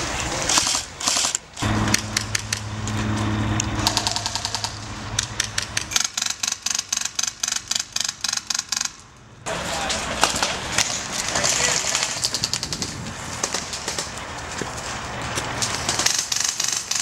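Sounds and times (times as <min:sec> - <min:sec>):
low hum: 0:01.5 - 0:06.0
airsoft gun shots: 0:03.8 - 0:09.0.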